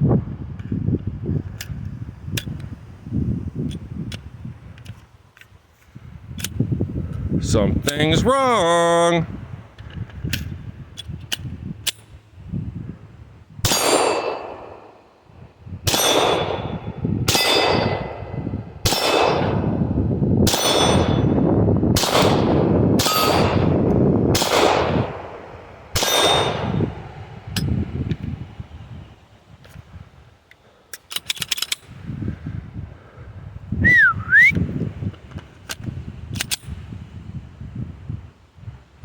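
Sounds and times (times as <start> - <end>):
pistol shots: 13.7 - 15.0, 15.9 - 19.8, 20.5 - 21.3, 22.0 - 27.0
ringing steel targets: 13.7 - 15.0, 15.9 - 19.6, 20.5 - 21.4, 22.2 - 23.8, 24.4 - 27.0.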